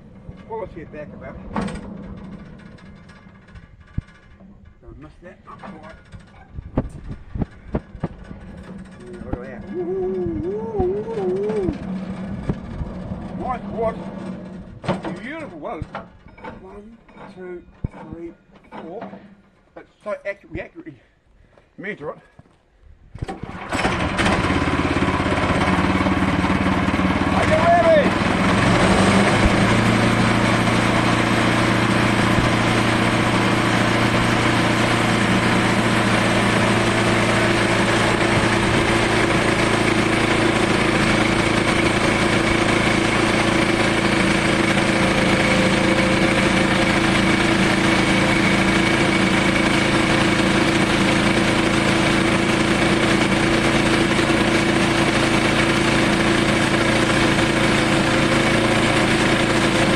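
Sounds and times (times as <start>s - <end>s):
sawmill sawing log: 11.0s - 15.6s, 23.4s - 59.9s.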